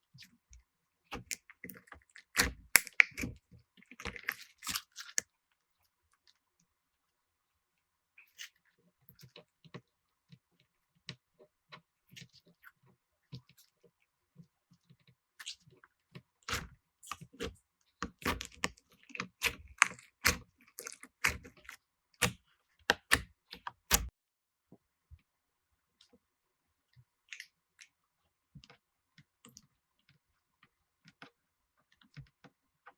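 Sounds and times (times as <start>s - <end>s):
slime clicking and popping: 2.2s - 3.4s, 19.4s - 23.3s.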